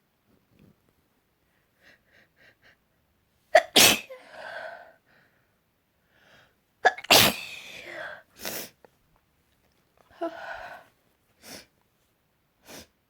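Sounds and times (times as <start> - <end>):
woman sneezing: 3.6 - 4.5, 6.9 - 8.8
woman's catching breaths: 10.1 - 11.7.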